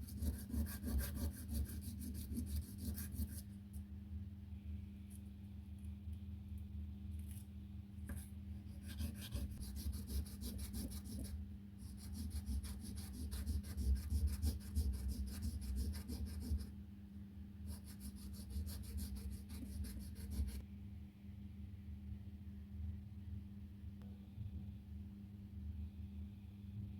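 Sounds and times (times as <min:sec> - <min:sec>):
filing a metal ring by hand: 0:00.0 - 0:03.4, 0:08.8 - 0:16.7, 0:17.7 - 0:20.6.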